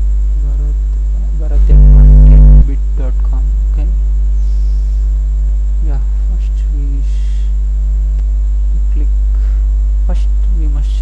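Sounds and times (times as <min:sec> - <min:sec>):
electrical mains hum: 0:00.0 - 0:11.0
person narrating: 0:05.9 - 0:07.5.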